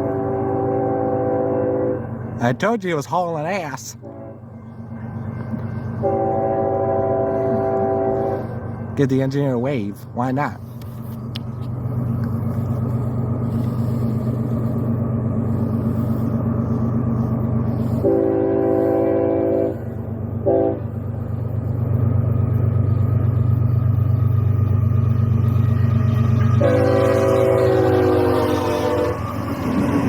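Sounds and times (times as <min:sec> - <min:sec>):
locomotive air horn blasts: 0:00.0 - 0:02.1, 0:04.0 - 0:04.4, 0:06.0 - 0:08.6, 0:17.8 - 0:20.9, 0:26.6 - 0:29.4
freight train rumbling past: 0:00.0 - 0:30.0.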